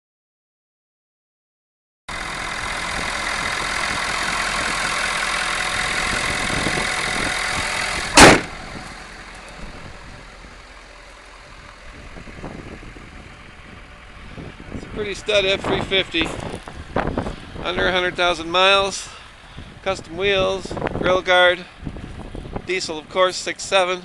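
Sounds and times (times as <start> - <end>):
diesel engine running: 2.1 - 24.0
loud thud: 8.1 - 8.8.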